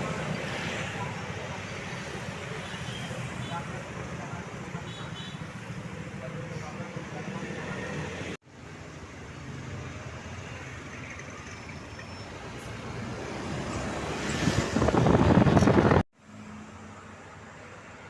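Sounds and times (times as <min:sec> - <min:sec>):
vehicle passing close by: 0:12.7 - 0:16.0.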